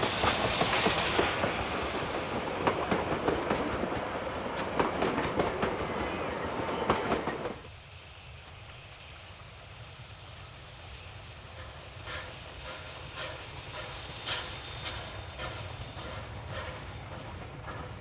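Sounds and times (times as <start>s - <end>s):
steam train rhythmic beats: 11.2s - 18.0s.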